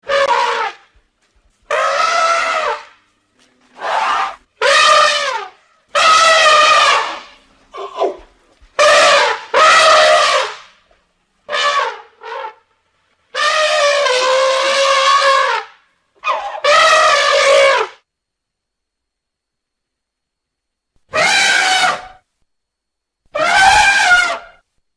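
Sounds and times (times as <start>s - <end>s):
elephant trumpeting: 0.0s - 0.9s, 1.7s - 3.0s, 3.8s - 10.7s, 11.5s - 12.7s, 13.3s - 18.0s, 21.1s - 22.2s, 23.3s - 24.6s.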